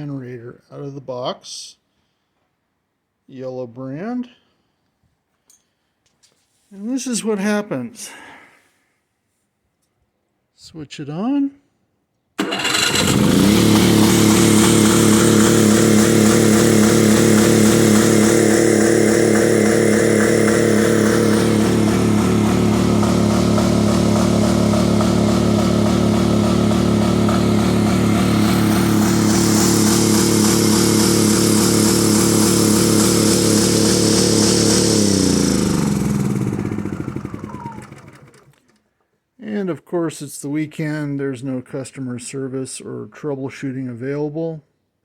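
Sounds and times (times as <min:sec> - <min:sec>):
generator engine running: 0:12.4 - 0:38.6.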